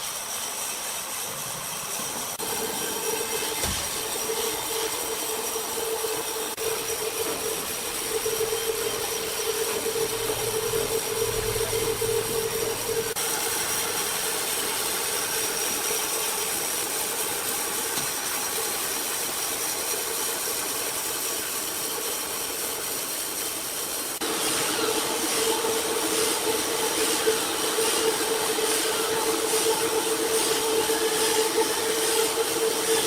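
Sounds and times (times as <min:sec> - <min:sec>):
sawmill machinery running: 0:00.0 - 0:33.0.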